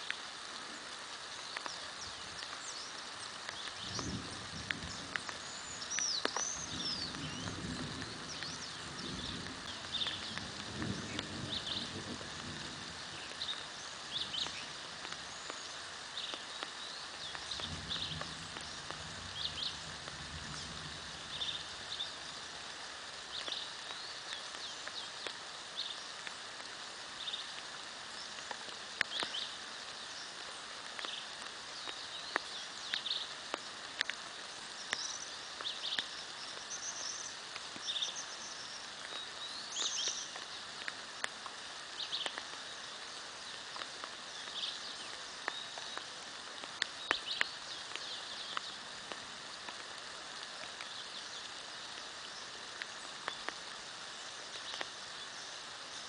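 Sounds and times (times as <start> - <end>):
light rain hissing: 0.0 - 56.0
birds chirping: 0.6 - 26.2.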